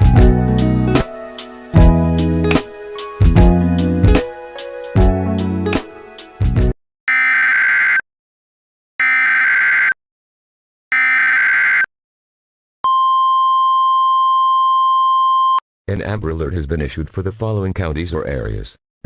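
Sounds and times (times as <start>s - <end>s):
steady single-pitch attention tone: 12.9s - 15.6s.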